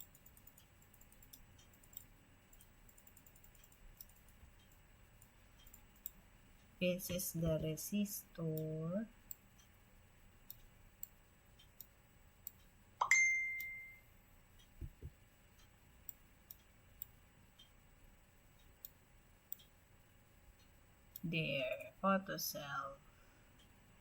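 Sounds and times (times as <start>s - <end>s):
computer mouse clicking: 0.0s - 6.2s, 10.4s - 12.7s, 14.6s - 17.2s, 18.8s - 19.7s
soft low thumps: 14.8s - 15.2s.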